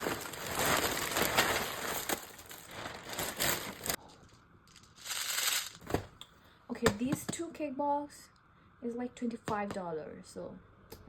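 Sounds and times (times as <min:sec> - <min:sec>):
packaging crinkling and rustling: 0:00.0 - 0:04.1, 0:04.7 - 0:06.1.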